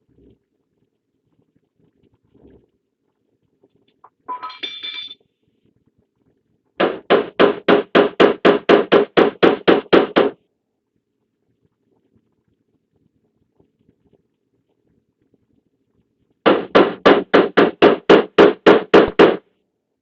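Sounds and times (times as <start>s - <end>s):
hammer knocking on sheet metal: 6.8s - 10.4s, 16.5s - 19.4s.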